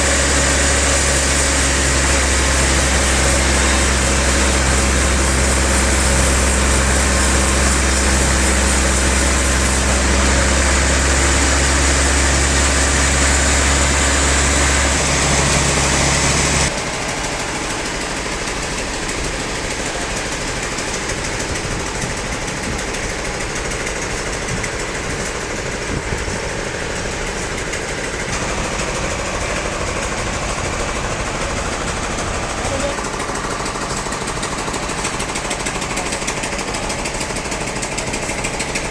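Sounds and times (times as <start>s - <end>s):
rattling machine noise: 0.0s - 38.9s
sawmill engine running: 0.0s - 38.9s.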